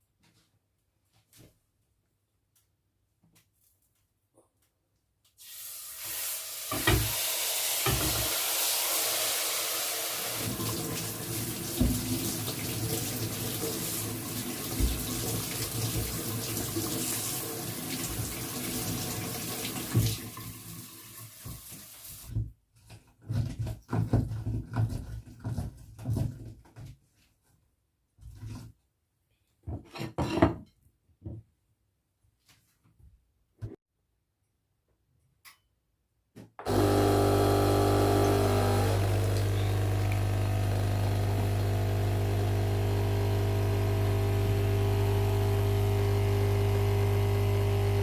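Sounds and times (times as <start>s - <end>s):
tap running into sink: 6.7s - 7.2s, 7.8s - 8.4s, 10.4s - 20.6s.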